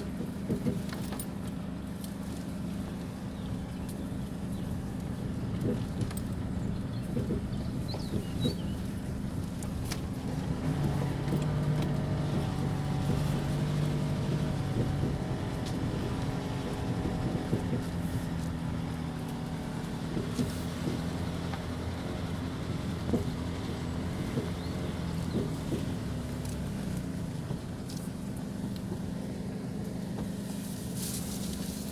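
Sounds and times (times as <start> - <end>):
diesel engine under load: 0.0 - 31.9
knocks and clatters: 9.4 - 28.1.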